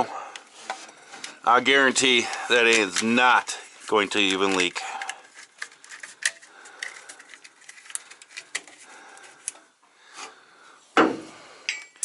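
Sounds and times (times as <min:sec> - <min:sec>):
metal parts and tools clicking: 0:11.7 - 0:12.0.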